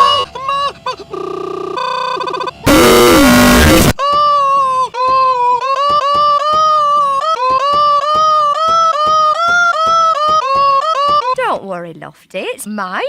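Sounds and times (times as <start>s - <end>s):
stuttering high-pitched tone: 1.1s - 3.9s
loud distorted noise blast: 2.7s - 4.0s.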